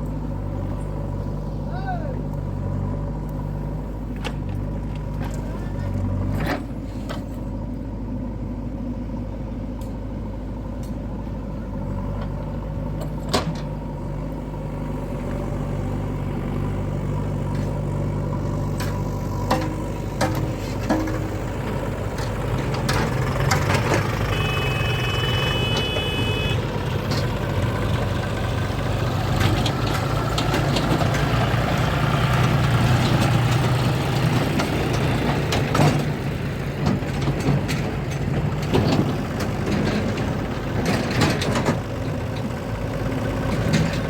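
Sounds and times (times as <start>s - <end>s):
diesel engine running under load: 0.0s - 44.0s
knocks and clanks: 18.7s - 24.4s.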